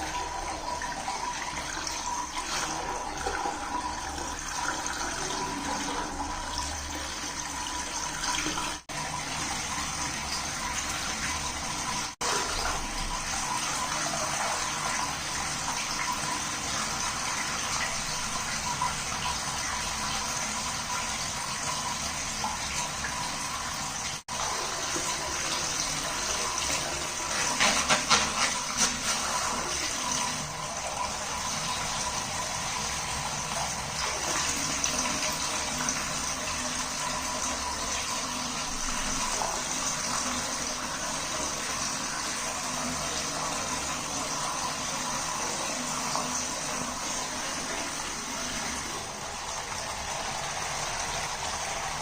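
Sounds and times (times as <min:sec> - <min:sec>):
water splashing: 0:24.2 - 0:31.4
tap water filling balloon: 0:24.4 - 0:32.2.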